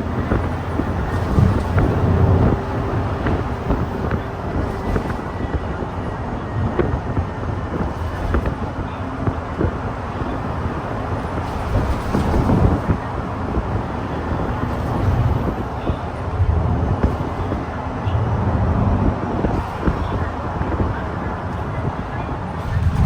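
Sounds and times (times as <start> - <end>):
bus drivetrain and road drone: 0.0 - 23.0.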